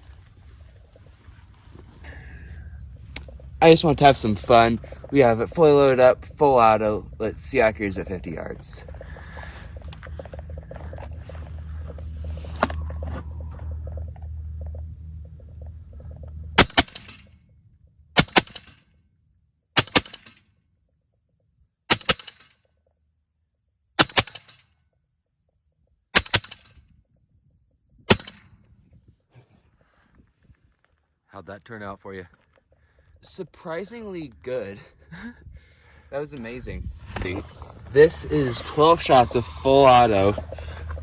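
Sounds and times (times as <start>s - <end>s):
low steady rumble: 0.0s - 24.6s, 25.8s - 41.0s
air rifle firing bursts: 16.6s - 17.0s, 18.2s - 18.6s, 19.8s - 20.3s, 26.2s - 26.6s.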